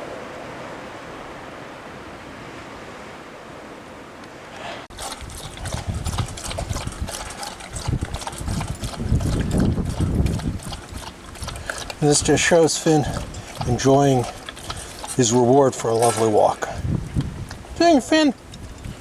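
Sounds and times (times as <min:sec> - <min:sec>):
surf on beach: 0:00.0 - 0:04.9
wind: 0:00.0 - 0:19.0
dog mouth wet clicks and thumps: 0:04.9 - 0:19.0.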